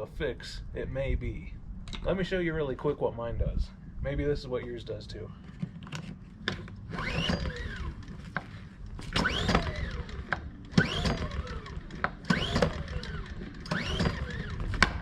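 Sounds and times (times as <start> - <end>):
generator recoil cord pulls: 5.4 - 15.0.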